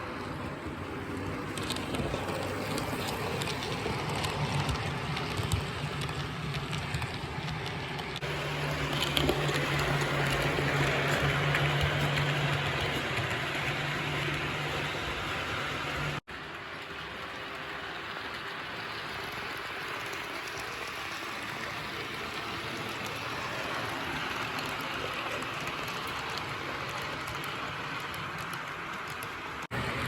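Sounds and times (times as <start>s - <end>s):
model train running on track: 0.0s - 30.0s.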